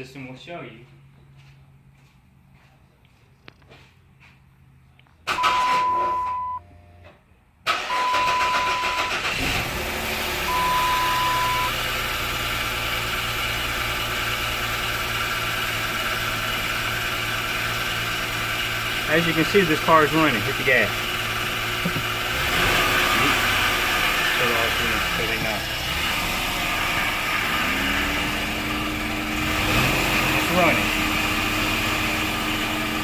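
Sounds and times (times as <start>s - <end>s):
car starter cranking: 5.3s - 6.5s, 7.7s - 11.6s
dashboard chime beeps: 5.4s - 6.6s, 10.5s - 11.7s
car engine idling: 7.7s - 33.0s.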